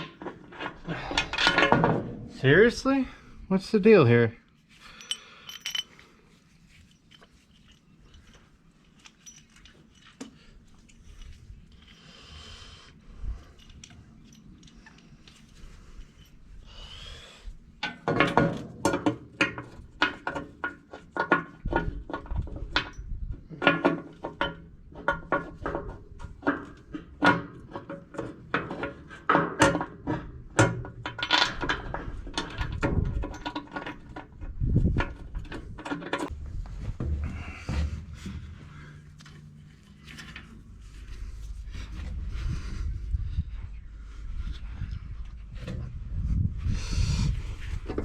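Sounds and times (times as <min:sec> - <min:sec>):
metal clanking on metal: 0:00.0 - 0:02.5.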